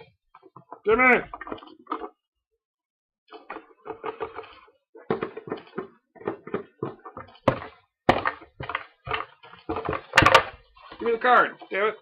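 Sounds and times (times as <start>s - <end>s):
taps knocks and rustles: 3.4s - 11.2s.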